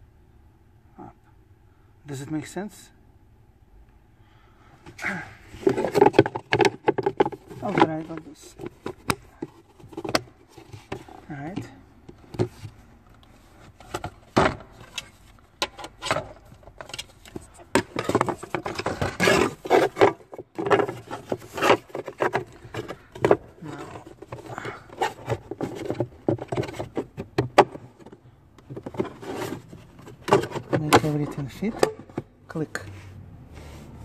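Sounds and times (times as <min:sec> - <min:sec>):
plastic clicking and scraping: 0:05.6 - 0:32.3.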